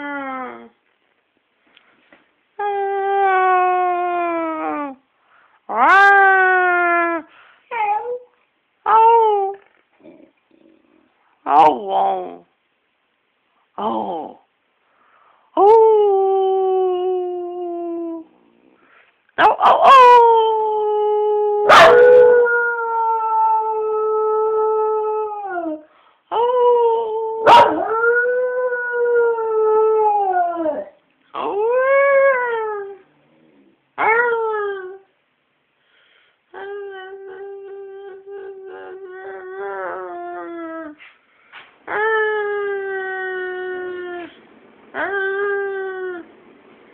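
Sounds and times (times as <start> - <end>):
dog howling: 21.5 - 24.8, 27.0 - 33.1
dog yipping: 21.7 - 22.0.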